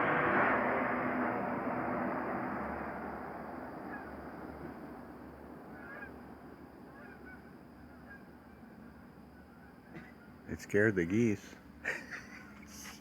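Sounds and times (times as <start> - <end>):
broad rushing noise: 0.0 - 9.0
low pulsing hum: 0.0 - 13.0
geese honking: 2.6 - 13.0.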